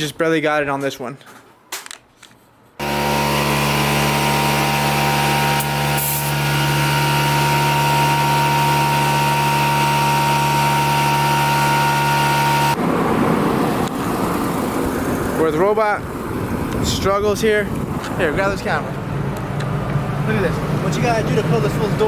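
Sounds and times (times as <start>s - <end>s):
air compressor whining: 2.8s - 15.5s.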